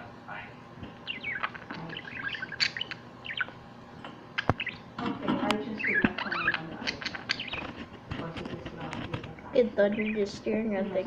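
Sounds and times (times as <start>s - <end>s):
budgerigars chattering and chirping: 1.0s - 3.6s, 4.4s - 7.8s, 9.8s - 10.4s.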